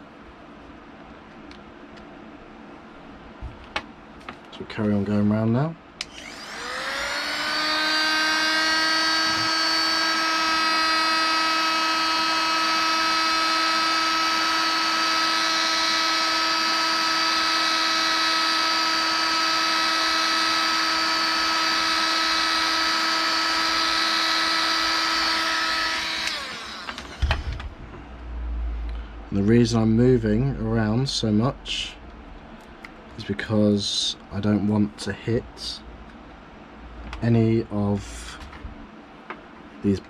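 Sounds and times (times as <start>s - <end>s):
heat gun motor whine: 6.0s - 27.8s.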